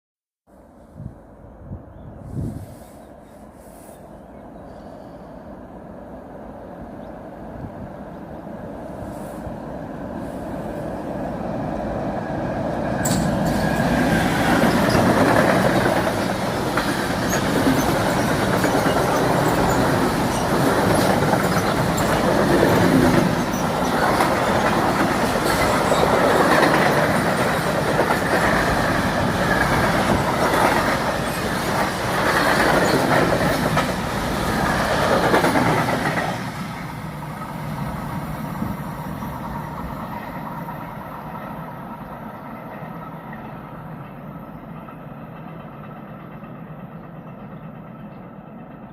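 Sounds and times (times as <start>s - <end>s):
freight train wheels rumbling: 2.2s - 48.9s
train wheel squeals: 13.0s - 33.8s.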